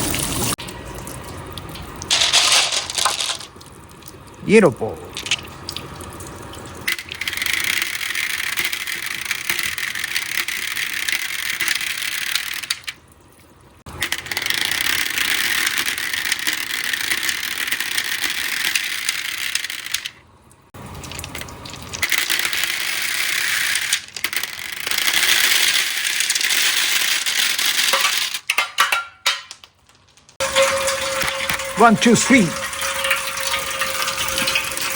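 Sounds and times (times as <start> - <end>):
marbles rolling along a track: 2.1 - 3.5, 6.9 - 12.9, 14.0 - 20.1, 22.0 - 28.5, 30.0 - 31.9.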